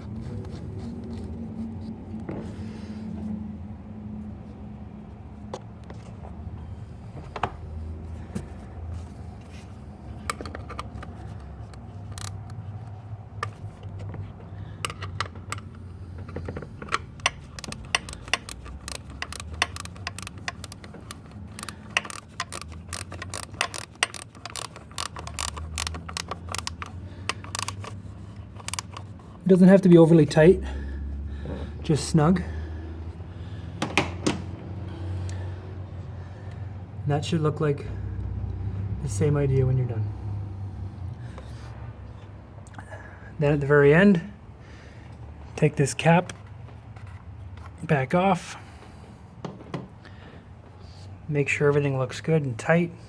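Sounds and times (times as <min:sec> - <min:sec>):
hand ratchet clicking: 0:10.2 - 0:14.1, 0:14.8 - 0:29.5.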